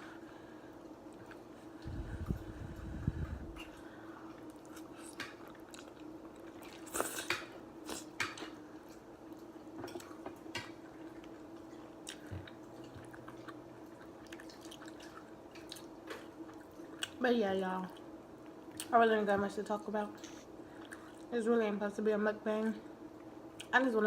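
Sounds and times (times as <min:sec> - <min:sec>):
low hum: 0:00.0 - 0:06.6
person chewing food: 0:03.6 - 0:17.2.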